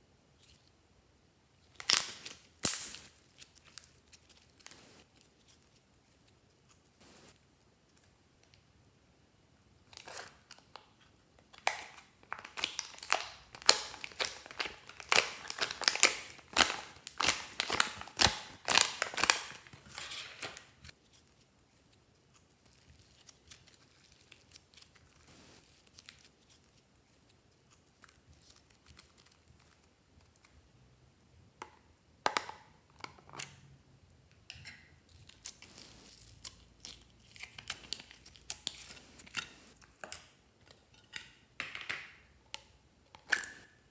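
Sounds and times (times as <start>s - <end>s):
slime crackling and popping: 1.8s - 4.8s, 11.6s - 20.8s.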